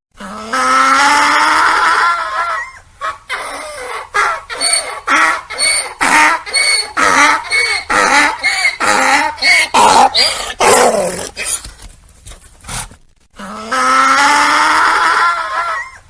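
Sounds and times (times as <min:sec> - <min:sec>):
donkey braying: 0:00.5 - 0:11.6.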